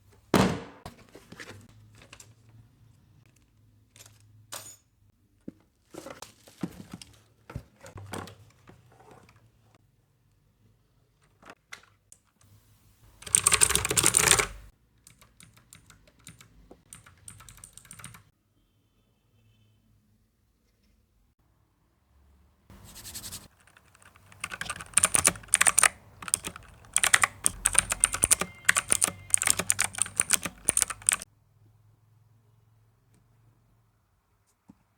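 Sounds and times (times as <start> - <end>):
mechanical keyboard typing: 13.1 - 18.3, 22.8 - 31.2.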